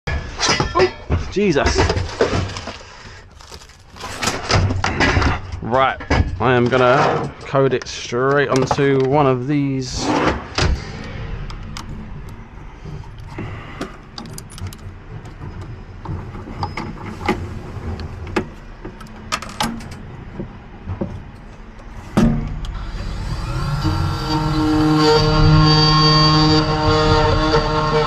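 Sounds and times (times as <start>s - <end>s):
keys and small parts clicking: 13.1s - 15.4s.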